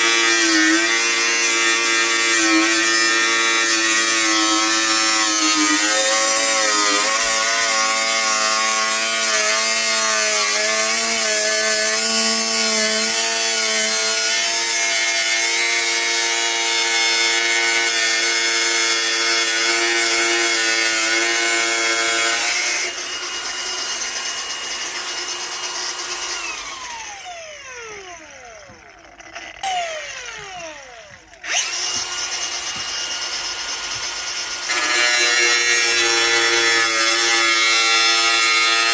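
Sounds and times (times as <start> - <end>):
electric grinder cutting: 0.0 - 38.9.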